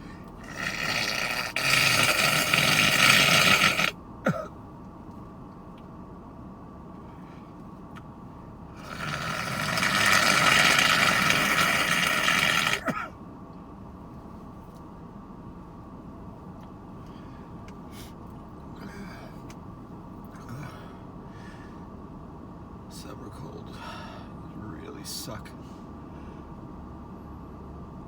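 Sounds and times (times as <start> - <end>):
person blowing nose: 0.4 - 3.9, 8.8 - 13.0.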